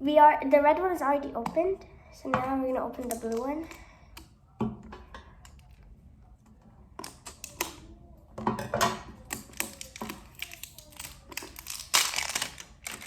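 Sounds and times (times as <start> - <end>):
plastic lid clicking and crackling: 2.4 - 5.9, 7.0 - 13.0.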